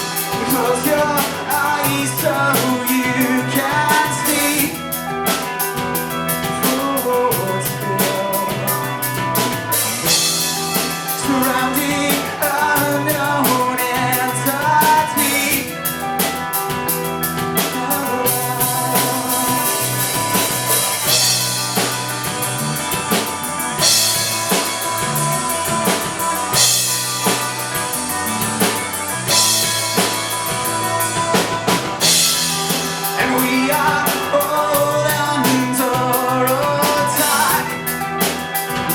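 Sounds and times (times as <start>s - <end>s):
drum kit beat: 0.0s - 38.9s
live rock band playing: 0.0s - 38.9s.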